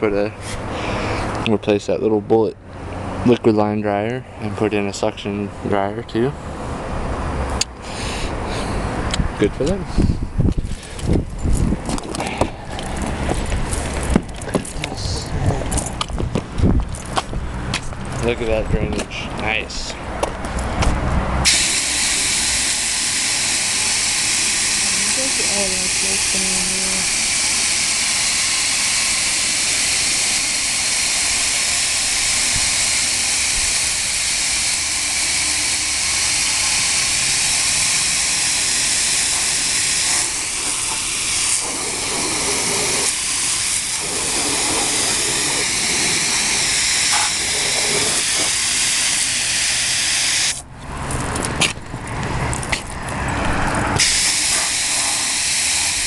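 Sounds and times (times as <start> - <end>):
hose spray hissing on metal coil: 21.5 - 50.6, 54.0 - 56.0.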